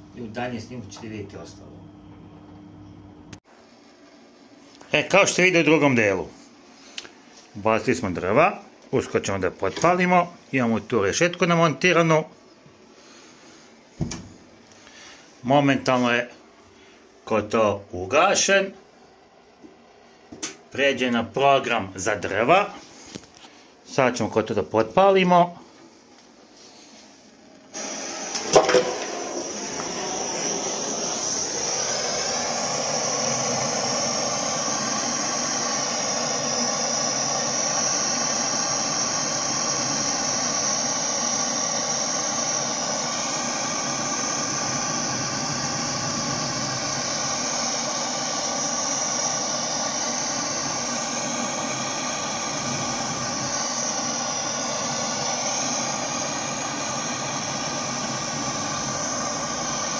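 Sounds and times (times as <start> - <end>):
faint hum: 0.0 - 59.9
fan whooshing: 25.0 - 59.9.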